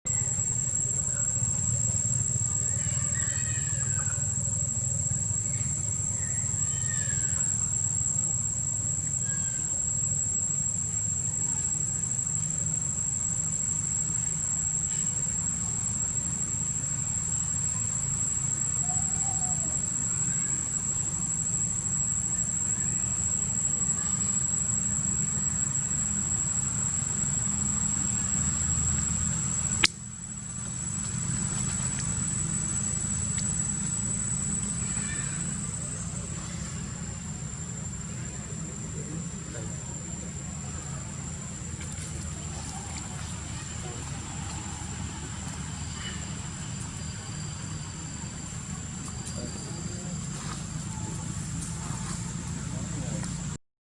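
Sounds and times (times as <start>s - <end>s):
high-pitched insect drone: 0.1s - 53.6s
sharp click: 29.8s - 30.0s.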